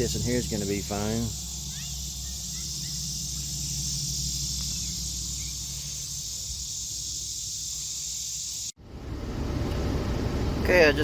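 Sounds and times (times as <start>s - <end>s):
low steady hum: 0.0s - 8.0s
high-pitched insect chorus: 0.0s - 8.8s.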